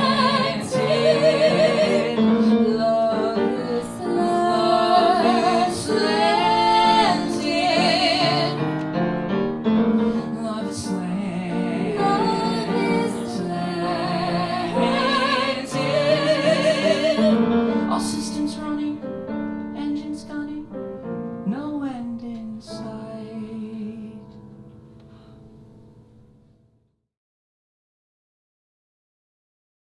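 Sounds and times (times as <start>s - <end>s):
woman singing with vibrato: 0.0s - 8.6s, 10.2s - 19.0s
piano accompaniment: 0.0s - 26.8s.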